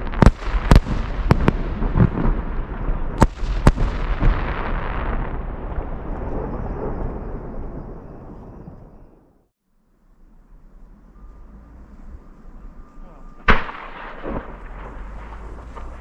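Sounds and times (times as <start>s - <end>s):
firework shells bursting: 0.0s - 6.0s, 13.5s - 16.0s
rolling echo: 0.0s - 9.4s, 12.6s - 16.0s.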